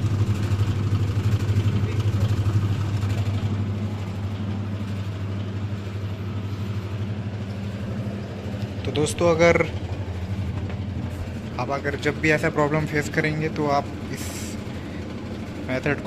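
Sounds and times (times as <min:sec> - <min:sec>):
washing machine motor humming: 0:00.0 - 0:16.0.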